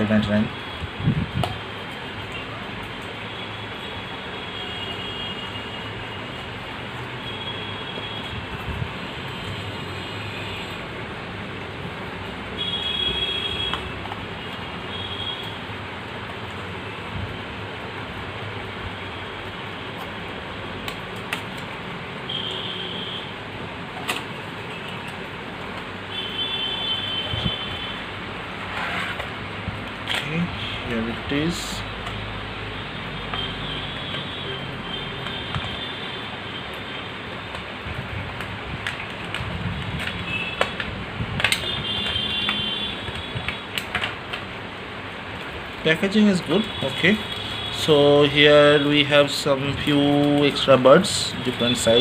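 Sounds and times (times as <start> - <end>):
packaging clicking and crackling: 38.3 - 44.5, 46.6 - 47.8.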